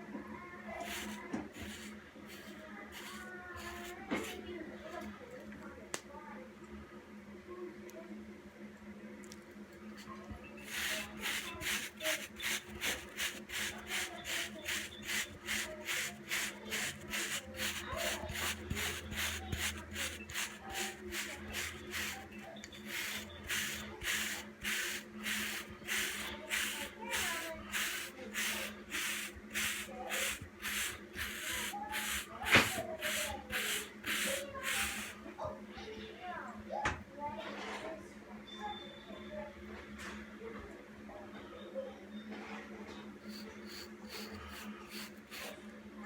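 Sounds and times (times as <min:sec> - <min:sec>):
hair brush strokes: 0:00.8 - 0:04.4, 0:10.6 - 0:35.2, 0:43.2 - 0:45.6.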